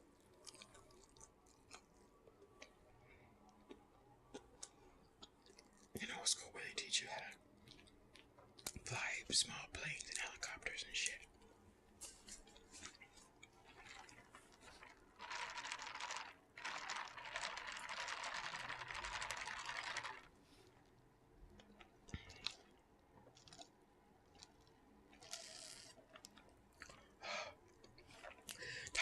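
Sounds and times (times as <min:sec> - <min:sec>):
crunching while eating: 0:00.1 - 0:02.8, 0:03.5 - 0:06.0, 0:12.0 - 0:20.3, 0:21.5 - 0:29.0.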